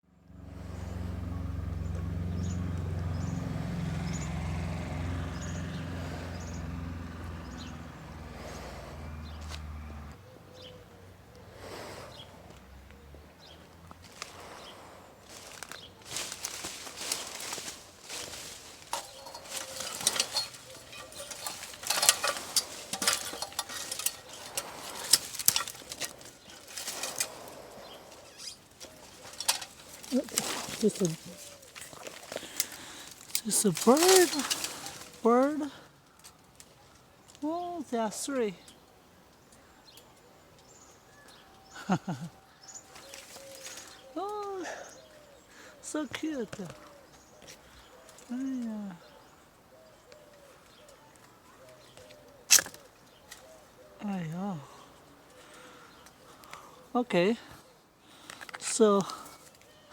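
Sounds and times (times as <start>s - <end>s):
low motor hum: 0.1s - 10.3s, 12.5s - 32.4s
leaves and branches rustling: 0.3s - 59.9s
branches clicking and snapping: 12.5s - 54.3s, 55.0s - 56.8s, 58.1s - 59.9s
small bird chirping: 15.3s - 35.6s.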